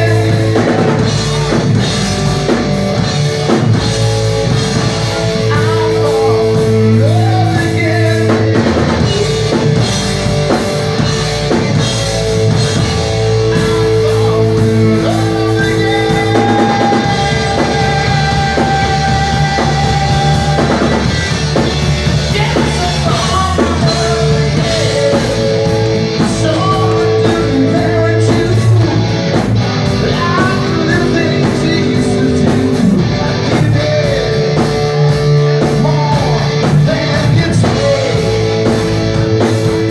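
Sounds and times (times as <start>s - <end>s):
person singing: 0.0s - 1.8s, 4.9s - 10.0s, 12.8s - 21.2s, 22.2s - 38.8s
drum kit: 0.0s - 39.9s
guitar: 0.0s - 39.9s
rock music: 0.0s - 39.9s.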